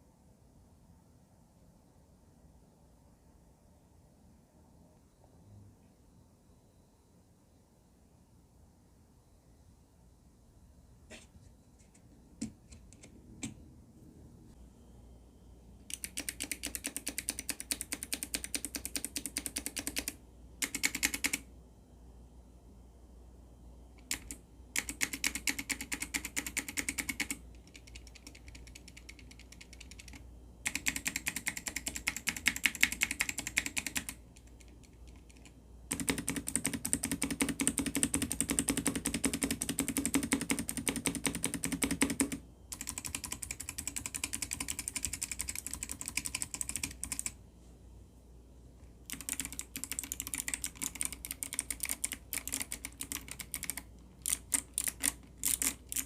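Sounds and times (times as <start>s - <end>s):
clicky mechanical keyboard typing: 15.9s - 21.5s, 24.0s - 47.4s, 49.0s - 56.0s.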